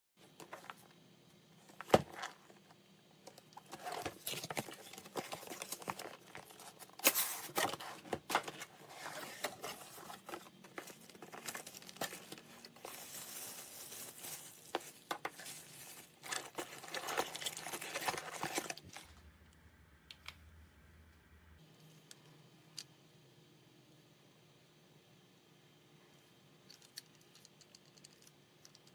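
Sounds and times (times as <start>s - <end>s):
crinkling and rustling: 0.2s - 19.3s.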